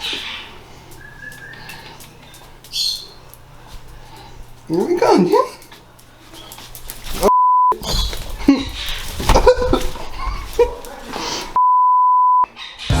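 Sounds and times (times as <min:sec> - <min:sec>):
censor bleep tone: 0:07.3 - 0:07.8, 0:11.6 - 0:12.5.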